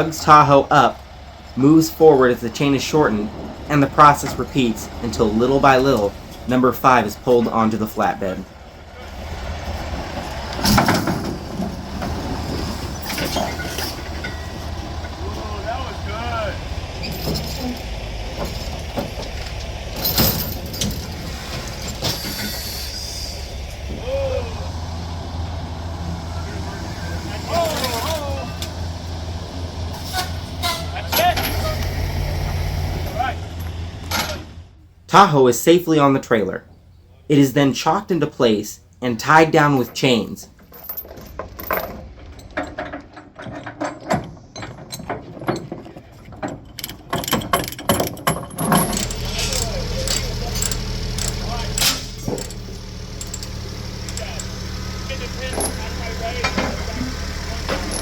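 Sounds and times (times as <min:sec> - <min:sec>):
truck engine running low: 0:00.0 - 0:35.2, 0:46.6 - 0:58.0
metal clanks and knocks: 0:09.7 - 0:22.6, 0:40.6 - 0:58.0
ratchet chain binder clicking: 0:46.5 - 0:54.7.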